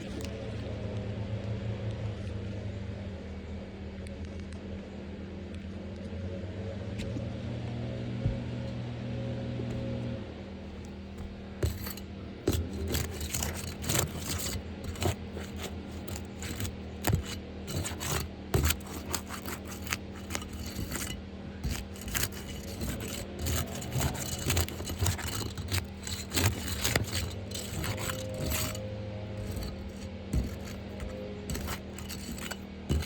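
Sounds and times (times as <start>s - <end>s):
tool scraping under shingles: 9.7s - 10.1s, 10.7s - 33.0s.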